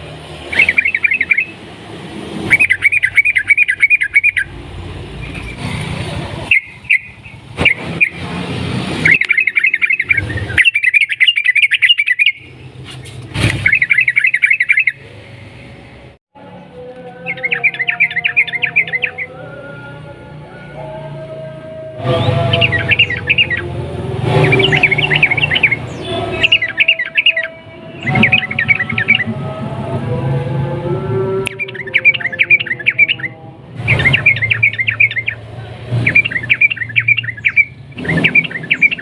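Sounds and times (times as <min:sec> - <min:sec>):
bird chattering song: 0:00.4 - 0:01.6, 0:02.4 - 0:04.6, 0:06.4 - 0:08.2, 0:09.0 - 0:12.7, 0:13.4 - 0:15.0, 0:17.2 - 0:19.4, 0:22.1 - 0:23.7, 0:24.3 - 0:29.3, 0:31.5 - 0:39.0.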